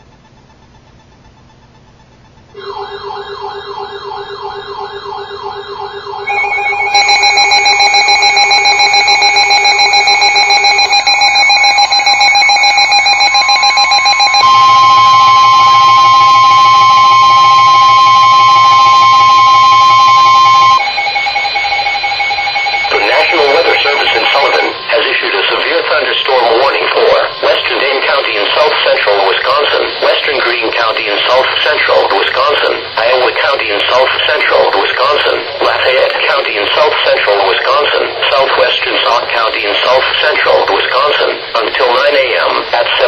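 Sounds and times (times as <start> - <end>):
wavering siren: 2.3 - 28.8
steady electronic alert tones: 2.5 - 37.6
high steady tone: 2.5 - 42.7.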